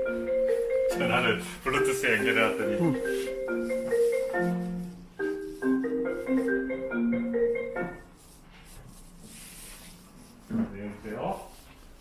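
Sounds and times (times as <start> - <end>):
marimba-like phone ringtone: 0.0 - 8.1.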